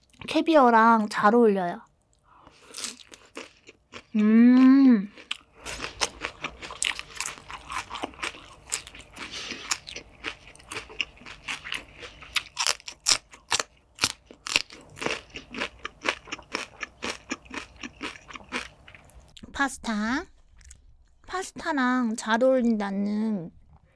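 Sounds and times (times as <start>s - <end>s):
crunchy chewing of salad: 2.0s - 19.4s.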